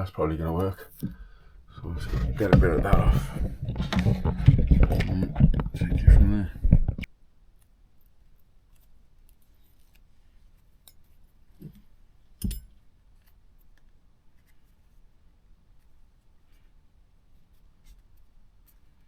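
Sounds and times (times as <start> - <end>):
loud knock: 2.2 - 6.3
soft thump: 2.2 - 7.0.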